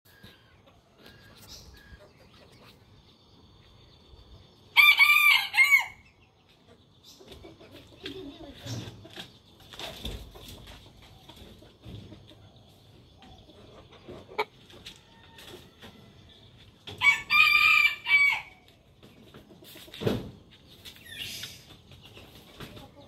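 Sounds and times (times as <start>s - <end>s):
rooster crowing: 4.8s - 6.0s, 17.0s - 18.6s.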